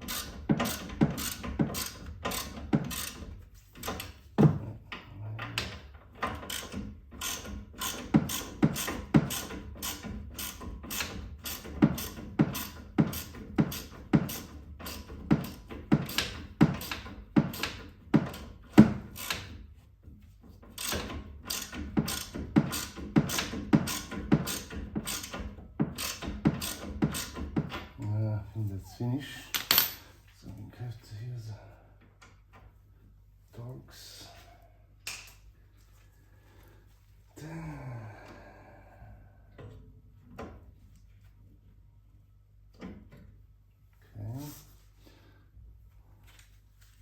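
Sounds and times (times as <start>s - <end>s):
ratchet wrench clicking: 0.1s - 3.2s, 6.5s - 15.0s, 20.8s - 25.4s.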